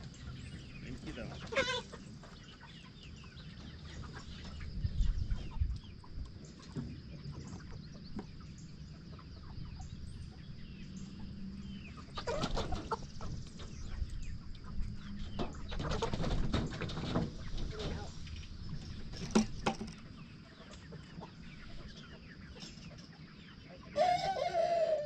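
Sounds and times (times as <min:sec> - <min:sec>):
chickens clucking and chirping: 0:00.0 - 0:25.0
low bumps and handling noise: 0:15.0 - 0:20.1.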